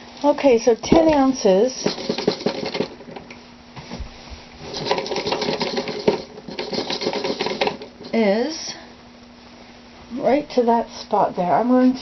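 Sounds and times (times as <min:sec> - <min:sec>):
beads rattling in a container: 0:01.8 - 0:03.0, 0:04.7 - 0:08.1.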